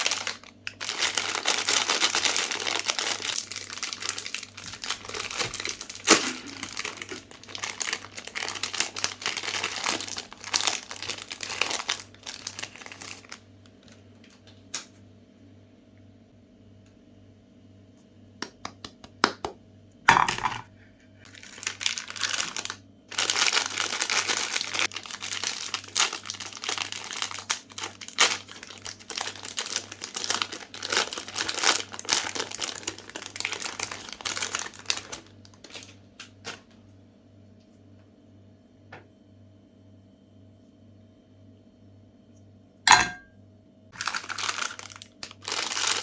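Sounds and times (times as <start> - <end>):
wrapper ripping: 0.0 - 13.4, 21.3 - 36.6, 44.0 - 46.0
plastic wrapper crinkling: 0.0 - 14.5, 21.3 - 36.7, 44.0 - 46.0.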